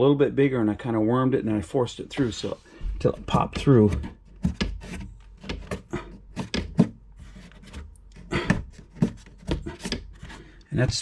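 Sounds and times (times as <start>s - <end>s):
clicks knocks and rubbing: 2.2s - 10.6s.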